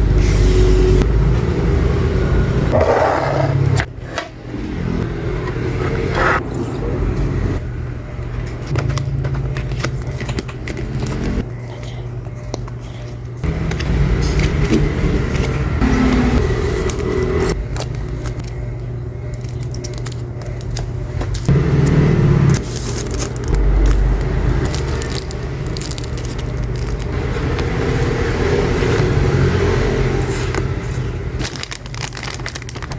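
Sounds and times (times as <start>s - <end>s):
low background hum: 4.7s - 32.9s
packaging crinkling and scraping: 8.5s - 11.5s, 16.2s - 21.5s, 22.6s - 32.9s.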